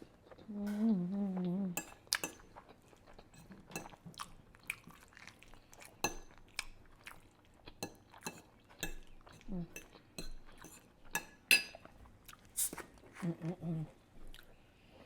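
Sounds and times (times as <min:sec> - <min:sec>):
person humming: 0:00.5 - 0:01.8, 0:13.2 - 0:14.0
fork clinking on a dish: 0:07.8 - 0:11.9.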